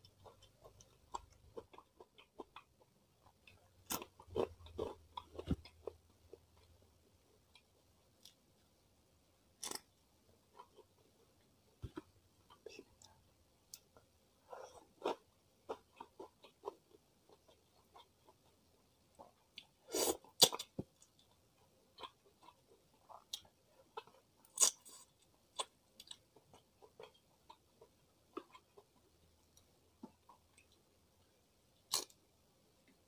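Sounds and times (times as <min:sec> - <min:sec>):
close chewing with wet clicks: 0:25.5 - 0:30.8.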